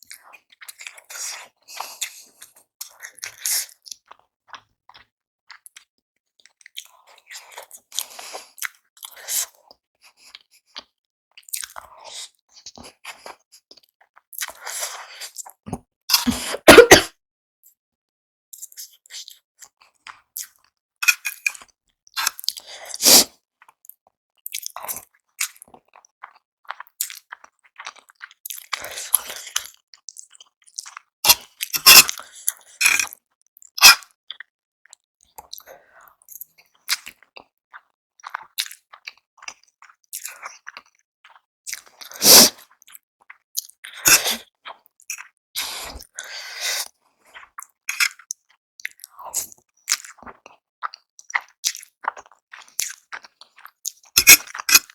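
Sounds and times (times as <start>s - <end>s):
chewing and biting: 0.1s - 16.8s, 18.6s - 54.9s.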